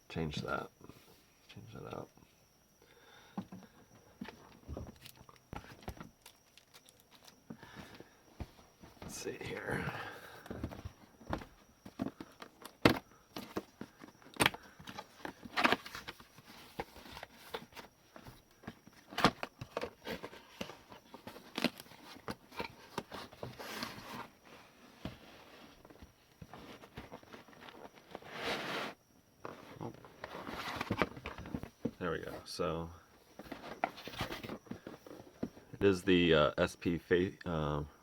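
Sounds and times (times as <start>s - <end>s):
packaging rustling: 5.0s - 7.4s.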